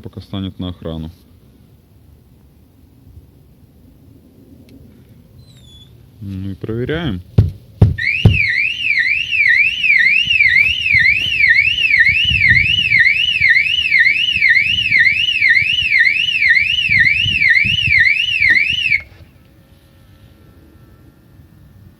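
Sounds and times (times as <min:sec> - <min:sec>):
car alarm siren wailing: 0:08.0 - 0:19.2.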